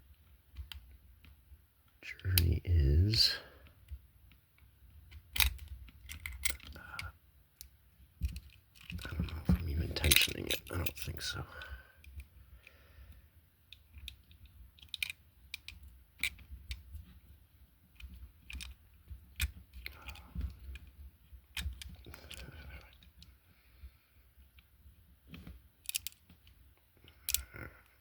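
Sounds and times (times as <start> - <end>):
lock picking tools clicking: 5.1 - 7.1, 13.7 - 16.8, 18.0 - 20.2, 25.8 - 26.3, 27.0 - 27.5.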